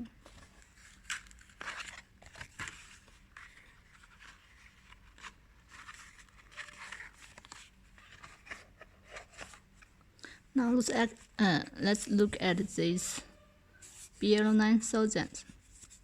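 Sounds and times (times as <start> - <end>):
paper and cardboard rustling: 0.2 - 10.0.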